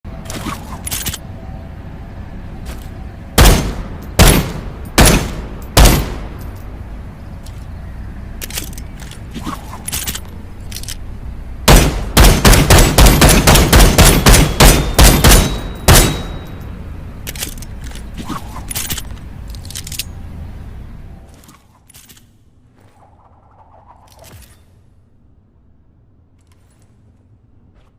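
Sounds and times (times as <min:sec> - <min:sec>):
pistol gunshots: 0:03.4 - 0:06.4, 0:11.6 - 0:16.4
gun handling clicks: 0:08.4 - 0:11.0, 0:17.2 - 0:20.2.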